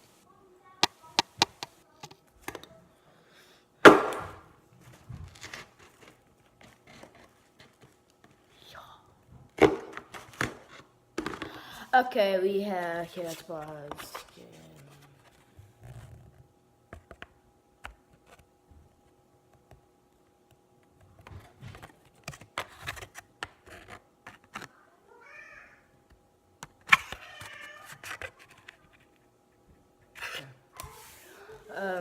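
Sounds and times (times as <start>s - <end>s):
cat meowing: 25.1s - 25.9s, 27.2s - 28.0s.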